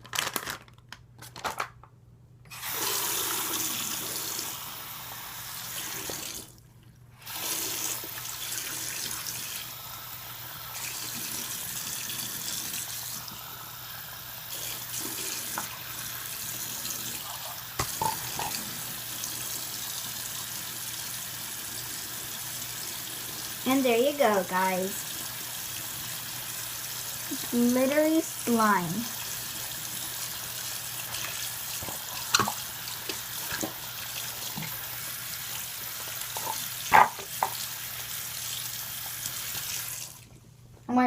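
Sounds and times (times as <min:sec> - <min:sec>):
sink tap running: 0:07.2 - 0:40.2.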